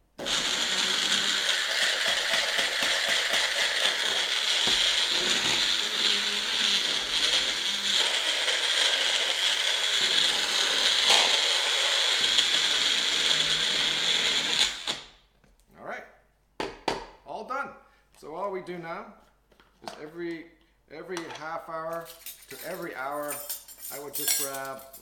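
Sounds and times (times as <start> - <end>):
blender whirring: 0.0 - 15.1.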